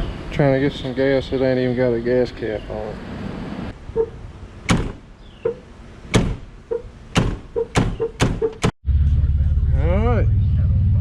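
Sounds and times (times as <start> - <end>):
sharp knocks: 4.7 - 8.8
short squeaks: 6.7 - 8.7.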